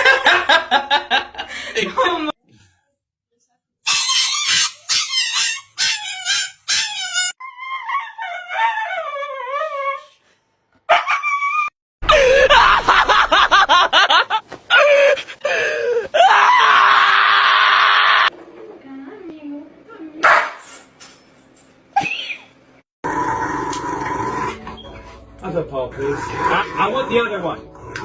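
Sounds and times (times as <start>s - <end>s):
dog yipping and howling: 3.9s - 10.1s, 10.9s - 11.7s.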